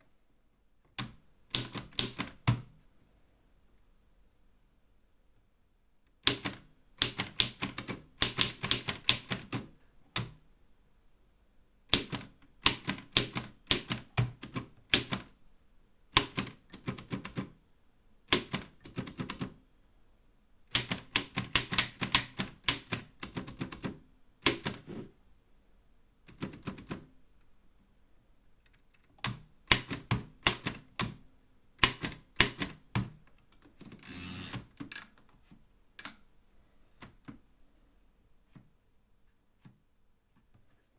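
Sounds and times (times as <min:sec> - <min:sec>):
typewriter keys striking: 0:01.0 - 0:02.6, 0:06.2 - 0:10.4, 0:11.9 - 0:15.3, 0:18.3 - 0:19.6, 0:20.7 - 0:24.8, 0:29.3 - 0:31.1, 0:31.8 - 0:33.2.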